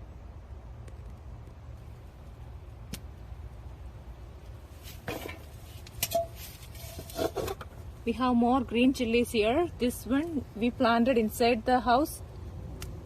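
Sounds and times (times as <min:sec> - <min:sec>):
rustling leaves: 0:00.0 - 0:12.7
plants being picked clicking: 0:12.7 - 0:13.0.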